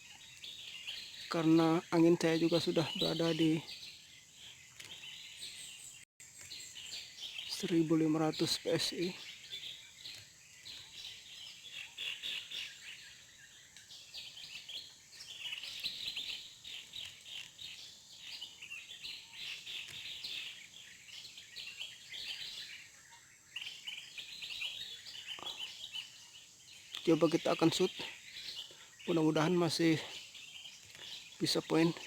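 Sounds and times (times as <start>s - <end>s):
birds chirping: 0.0s - 32.0s.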